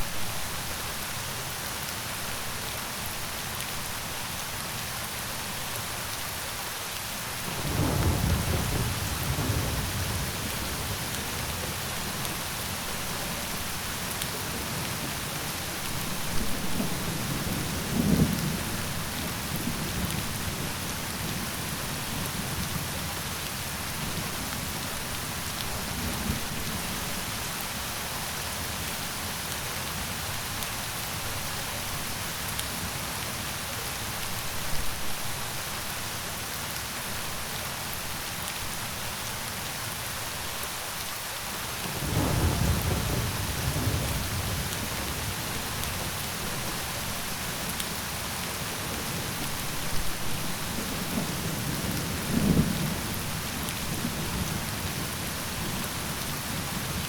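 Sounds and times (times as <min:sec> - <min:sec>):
heavy rain: 0:00.0 - 0:57.0
thunder rumbling: 0:07.6 - 0:11.8, 0:41.9 - 0:47.4.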